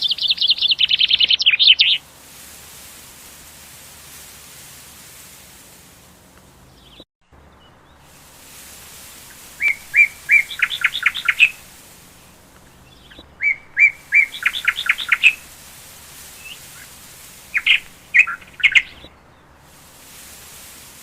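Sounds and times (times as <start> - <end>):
songbird singing: 0.0 - 2.0, 6.2 - 20.9
steady hiss: 0.0 - 21.0.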